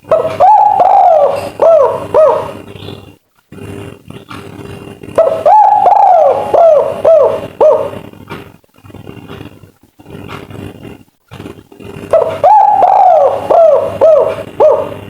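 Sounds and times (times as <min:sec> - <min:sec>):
dove cooing: 0:00.0 - 0:04.3, 0:05.0 - 0:08.3, 0:11.9 - 0:15.0.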